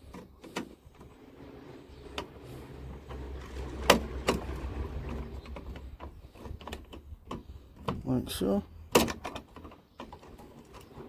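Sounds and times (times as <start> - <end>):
low rumble: 1.4 - 7.2
metal clicks of door mechanism: 8.9 - 10.8.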